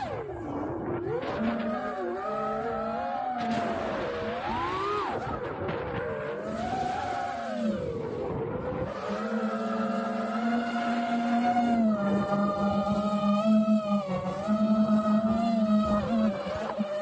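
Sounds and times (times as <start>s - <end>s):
drone motors whining: 0.0s - 17.0s
wind noise: 3.4s - 9.2s.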